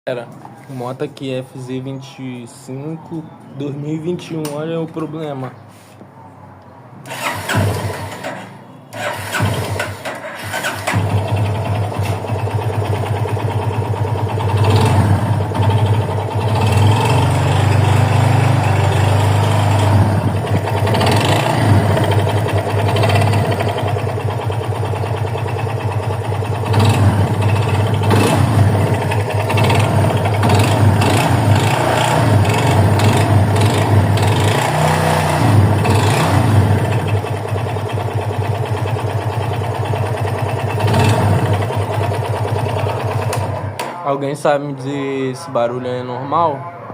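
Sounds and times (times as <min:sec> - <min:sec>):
motorcycle engine running: 0:10.9 - 0:43.8.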